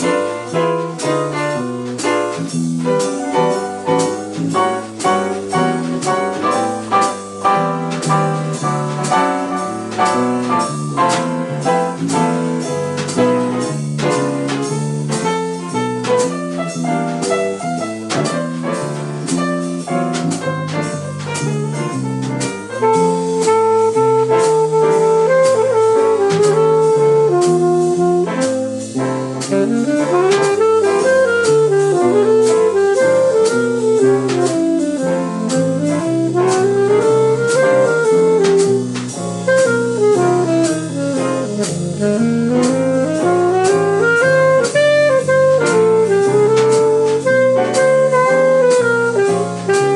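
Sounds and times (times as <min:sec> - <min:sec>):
jazz drum kit: 0:00.0 - 0:49.9
saxophone lead: 0:22.8 - 0:49.9.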